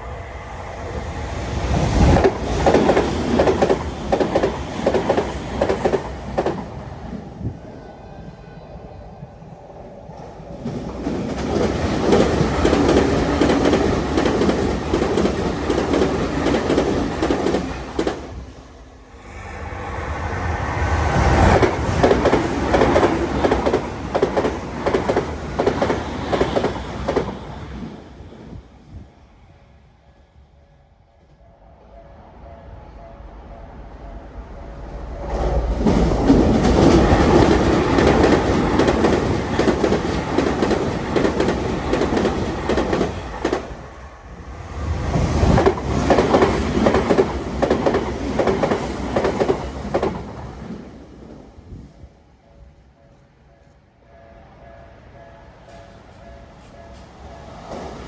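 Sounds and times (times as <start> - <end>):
train wheels rumbling on rails: 0.0 - 29.3, 33.9 - 58.0
sharp clicks of train cars: 2.2 - 6.7, 10.2 - 18.4, 21.6 - 27.5, 35.8 - 43.9, 45.5 - 50.7
level crossing warning bell: 52.5 - 57.8.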